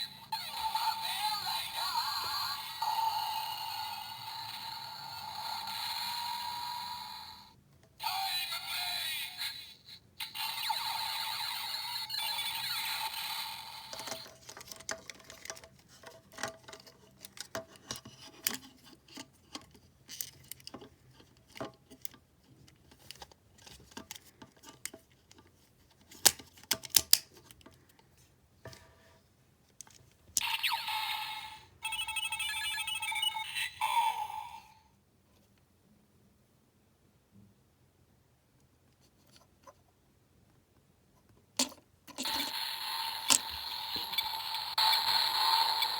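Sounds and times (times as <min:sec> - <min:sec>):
tinny toy sound effects: 0:00.0 - 0:14.3, 0:30.4 - 0:34.8, 0:42.2 - 0:45.9
plastic parts clicking: 0:26.1 - 0:27.8
quick beeping: 0:30.4 - 0:34.6.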